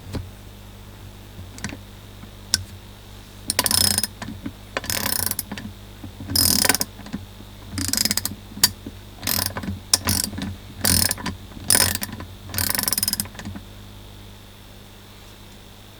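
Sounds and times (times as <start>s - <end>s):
ratchet pawl clicking: 3.5s - 5.6s, 6.3s - 7.1s, 7.7s - 13.5s.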